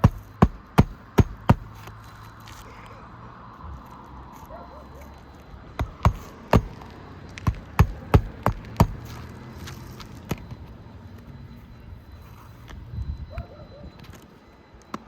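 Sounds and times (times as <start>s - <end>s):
hammer striking roofing nails: 0.0s - 1.8s, 5.8s - 9.1s.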